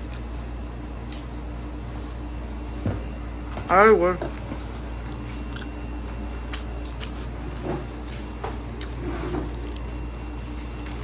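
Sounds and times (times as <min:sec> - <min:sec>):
wet chewing: 0:00.0 - 0:02.7, 0:03.4 - 0:11.0
steady low hum: 0:00.0 - 0:11.0.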